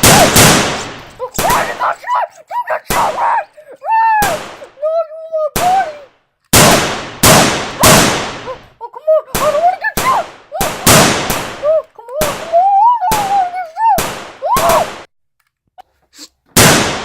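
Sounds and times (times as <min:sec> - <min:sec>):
gunshots: 0:00.0 - 0:02.0, 0:04.2 - 0:04.7, 0:06.5 - 0:08.6, 0:09.3 - 0:13.3, 0:14.0 - 0:15.1, 0:16.6 - 0:17.0
voice wailing: 0:01.2 - 0:06.1, 0:07.8 - 0:10.9, 0:11.6 - 0:14.9.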